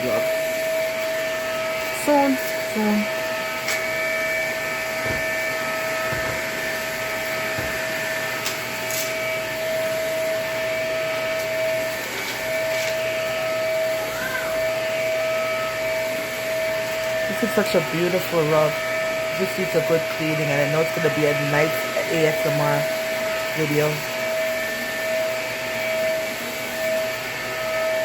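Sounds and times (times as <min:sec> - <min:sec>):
vacuum cleaner running: 0:00.0 - 0:28.0.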